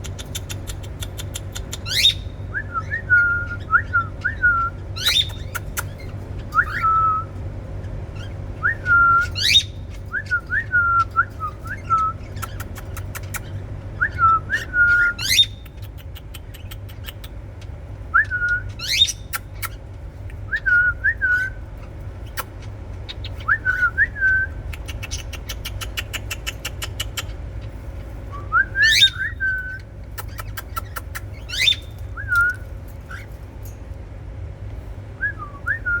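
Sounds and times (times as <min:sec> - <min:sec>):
low steady hum: 0:00.0 - 0:36.0
cockatiel whistling: 0:14.0 - 0:15.7, 0:28.3 - 0:33.2.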